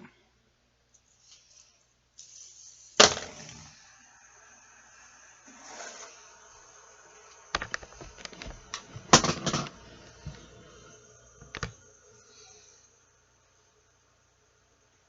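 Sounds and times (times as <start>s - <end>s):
clicks and knocks of fidget toys: 7.5s - 9.7s.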